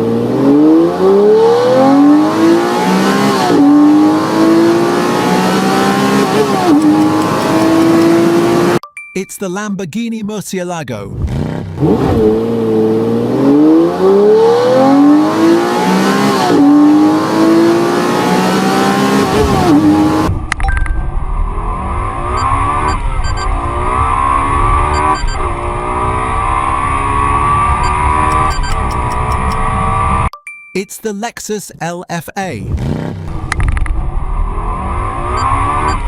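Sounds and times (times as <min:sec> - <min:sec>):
sports car engine revving: 0:00.0 - 0:08.8, 0:11.1 - 0:20.4, 0:32.7 - 0:36.0.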